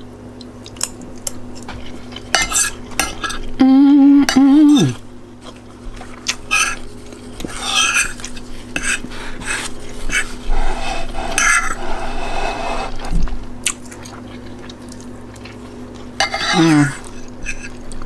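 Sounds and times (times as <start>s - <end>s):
utensil scraping plate: 6.4s - 13.1s, 16.2s - 17.8s.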